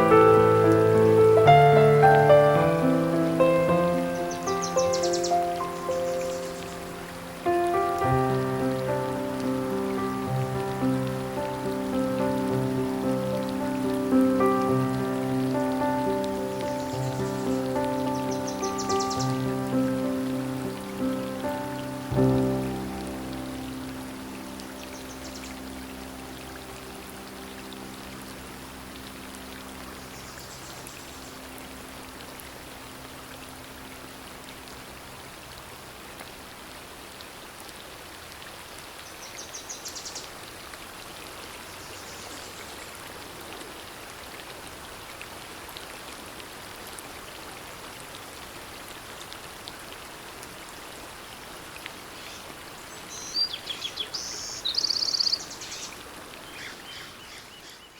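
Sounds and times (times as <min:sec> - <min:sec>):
steady rushing outdoor noise: 0:00.0 - 0:30.4
bird chirps and calls: 0:04.1 - 0:06.9, 0:53.0 - 0:57.9.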